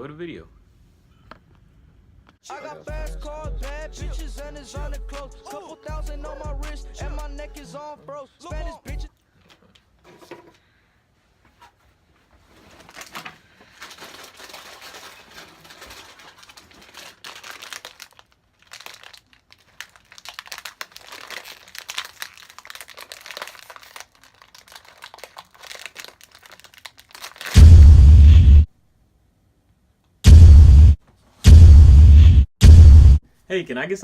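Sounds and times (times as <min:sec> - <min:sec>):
snack bag crinkling: 0:12.8 - 0:27.6.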